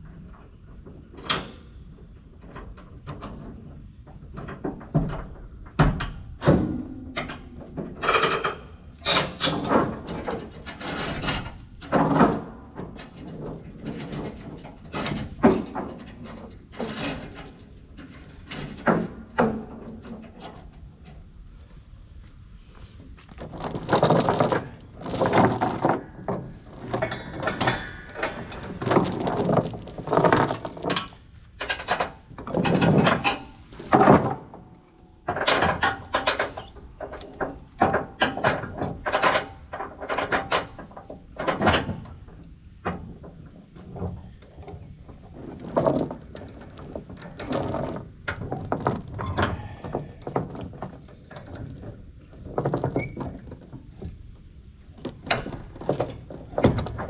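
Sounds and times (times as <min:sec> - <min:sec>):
knocks clanks and rattles: 0:00.0 - 0:21.4, 0:23.1 - 0:57.0.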